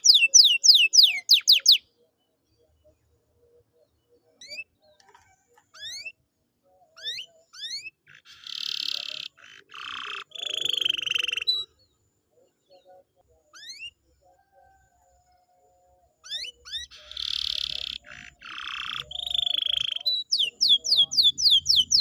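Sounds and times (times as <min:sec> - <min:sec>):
canary singing: 0:00.0 - 0:02.0, 0:05.7 - 0:06.2, 0:06.8 - 0:11.8, 0:12.7 - 0:14.0, 0:16.2 - 0:22.0.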